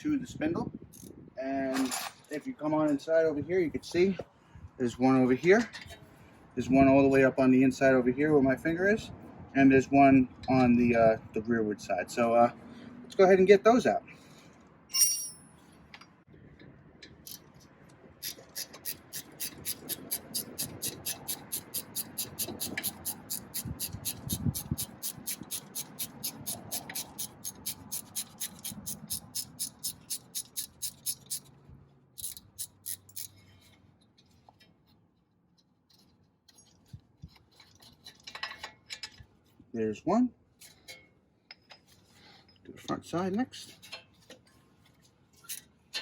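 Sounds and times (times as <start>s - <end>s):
ratchet wrench clicking: 18.2s - 31.5s, 32.2s - 33.4s.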